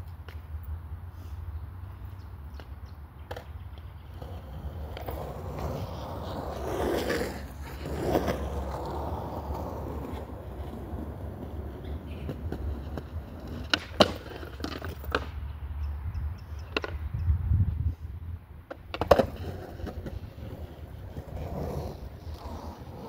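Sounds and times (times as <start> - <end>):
skateboard wheels rolling: 0.0 - 15.5, 16.3 - 23.0
skateboard clacks: 2.5 - 15.5, 16.2 - 17.2, 18.6 - 23.0.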